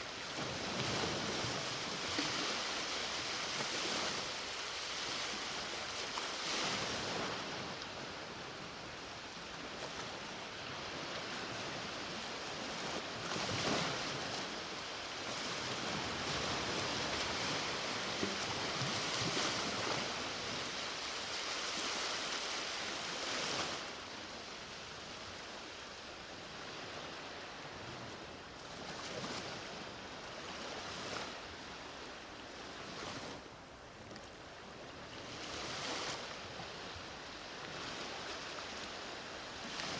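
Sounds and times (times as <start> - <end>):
sea waves breaking: 0.0 - 25.5.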